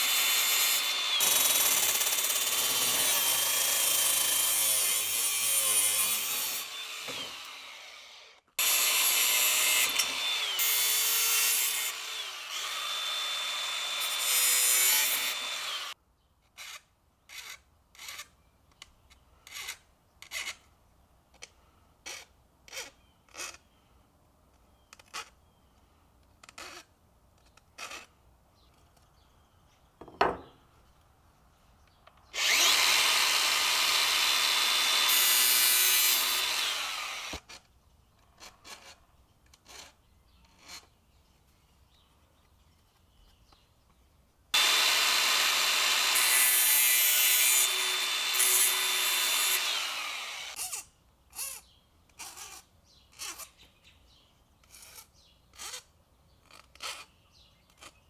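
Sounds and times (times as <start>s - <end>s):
power saw cutting tile trim: 0.0s - 16.0s, 32.4s - 37.5s, 44.6s - 51.6s.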